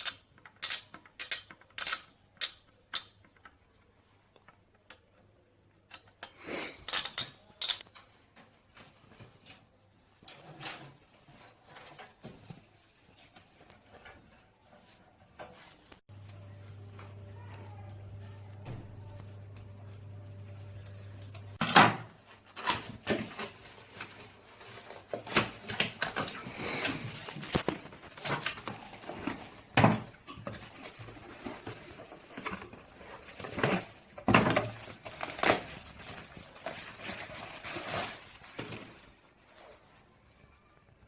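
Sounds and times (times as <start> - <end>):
hard objects clicking and rattling: 0.0 - 3.6
low steady hum: 16.1 - 21.6.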